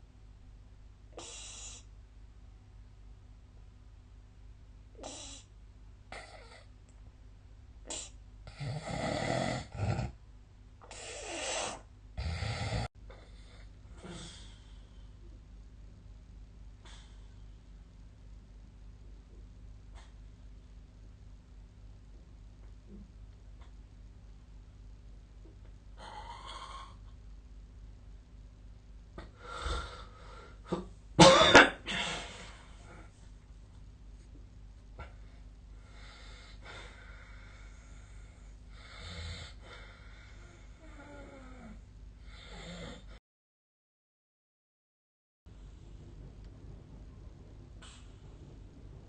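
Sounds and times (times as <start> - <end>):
faint low hum: 0.0 - 43.2, 45.5 - 49.0
man snoring: 8.5 - 10.2, 11.0 - 12.9, 38.8 - 39.6
faint breath: 16.8 - 17.7, 29.2 - 30.8, 35.0 - 40.9
person coughing loudly: 31.2 - 32.3
soft low sound: 45.5 - 49.0.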